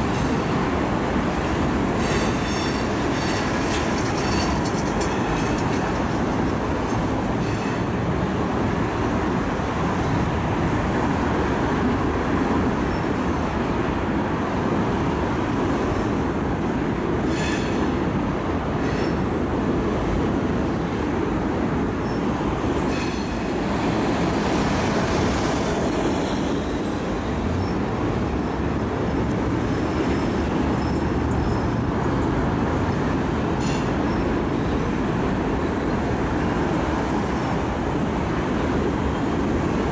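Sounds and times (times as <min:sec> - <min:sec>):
railroad cars rolling past: 0:00.0 - 0:39.9
wheels clicking over rail joints: 0:01.4 - 0:09.3
high wheel squeal: 0:02.0 - 0:06.0.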